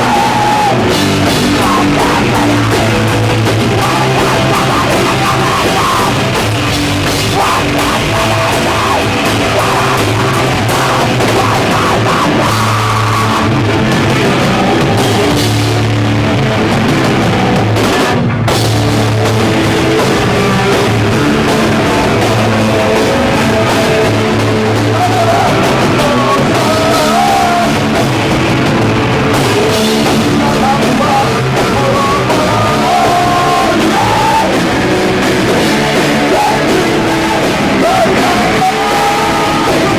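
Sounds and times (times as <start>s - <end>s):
live punk band playing: 0.0s - 39.9s.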